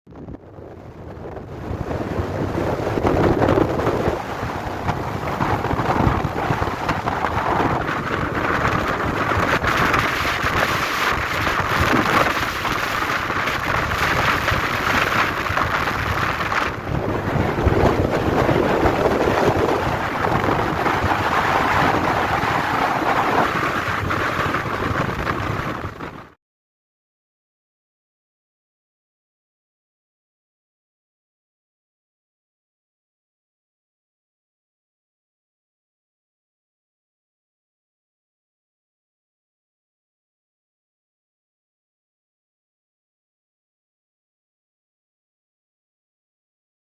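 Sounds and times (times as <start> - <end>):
storm wind on microphone: 0.1 - 26.4.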